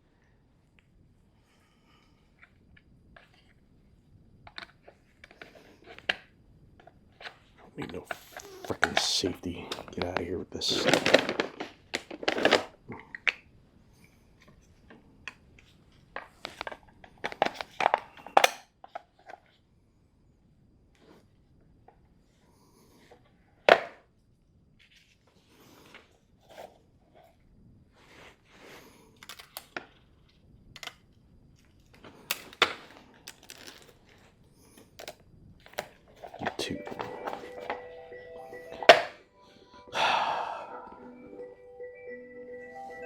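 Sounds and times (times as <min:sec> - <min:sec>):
crunching and clicking of handling: 0:04.4 - 0:13.5, 0:14.4 - 0:19.6, 0:28.0 - 0:37.8
tools clicking and knocking: 0:35.0 - 0:35.9.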